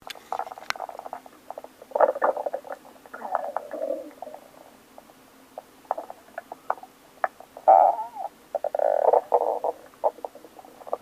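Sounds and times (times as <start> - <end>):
stomach growling: 0.2 - 11.0.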